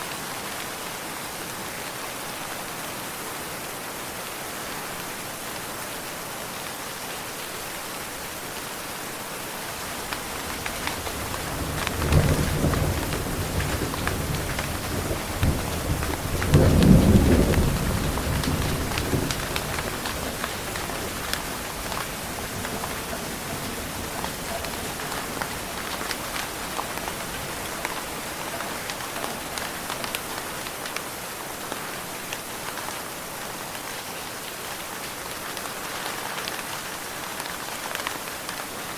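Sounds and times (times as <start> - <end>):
steady rain: 0.0 - 38.9
rumbling thunder: 9.7 - 30.5.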